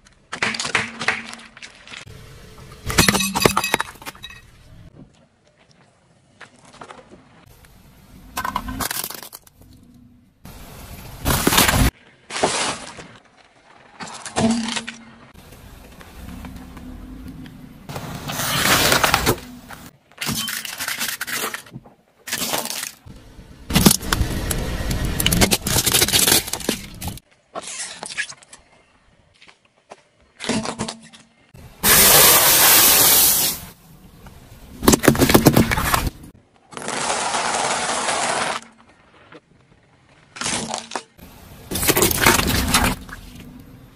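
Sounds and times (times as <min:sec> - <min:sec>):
objects crunching under tyres: 0:00.0 - 0:07.7, 0:08.4 - 0:09.9, 0:11.0 - 0:33.5, 0:34.1 - 0:43.9
car sound: 0:23.1 - 0:27.2.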